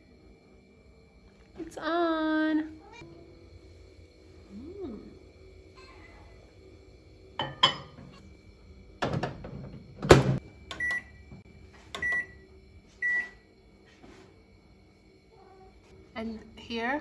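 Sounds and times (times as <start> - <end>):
microwave clicks and knocks: 9.0 - 11.4.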